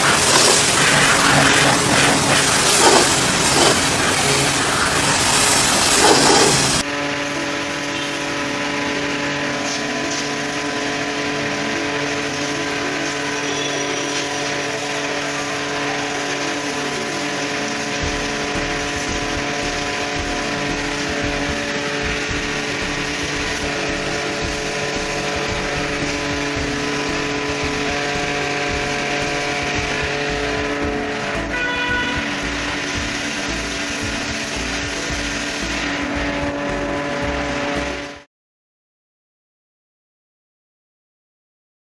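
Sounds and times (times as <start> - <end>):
pressure washer spray hiss: 0.0 - 6.8, 12.1 - 37.6
pressure washer motor hum: 0.0 - 38.2.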